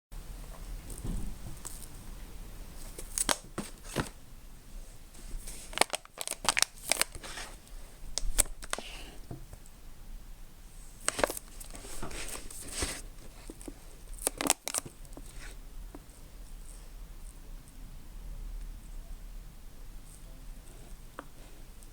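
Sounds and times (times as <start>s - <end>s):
crinkling handling noise: 2.8s - 4.2s, 5.0s - 9.6s, 10.8s - 16.8s.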